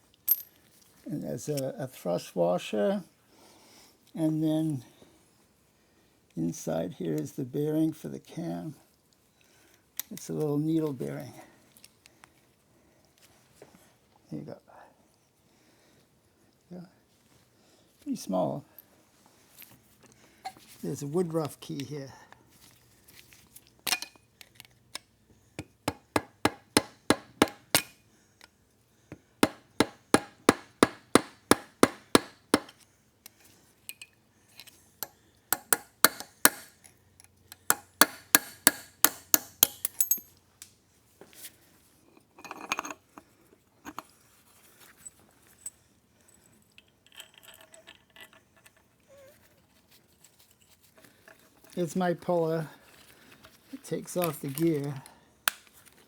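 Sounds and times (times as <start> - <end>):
faint metal clinks: 0.2 - 0.9, 39.6 - 40.5, 42.4 - 49.3
hammer tapping on metal: 25.6 - 28.0, 29.4 - 32.8, 35.0 - 36.8, 37.6 - 40.2.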